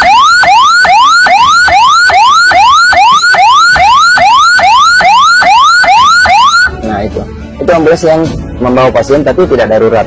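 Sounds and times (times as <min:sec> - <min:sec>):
ambulance electronic siren: 0:00.0 - 0:06.8.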